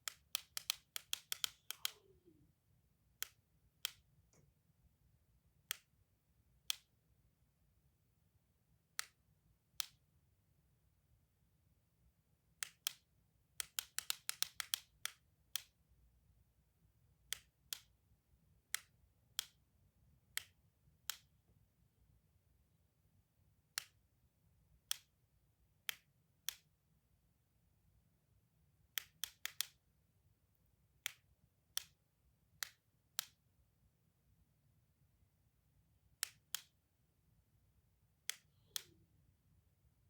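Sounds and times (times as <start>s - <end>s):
clicky toy clicking: 0.0s - 2.1s, 13.6s - 15.7s.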